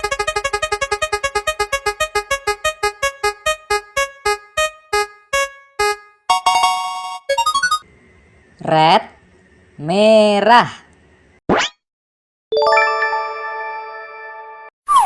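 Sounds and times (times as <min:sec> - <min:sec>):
bright held synth chord: 0:00.0 - 0:07.4
synthesized repeated note slowing: 0:00.0 - 0:07.8.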